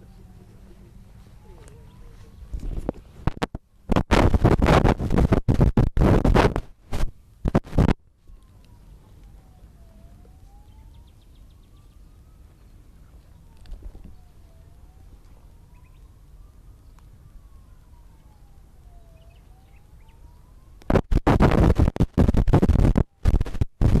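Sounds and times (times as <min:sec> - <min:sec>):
siren wailing: 0:00.0 - 0:02.8, 0:07.8 - 0:23.6
choppy bursts of harsh noise: 0:03.2 - 0:08.0, 0:20.9 - 0:24.0.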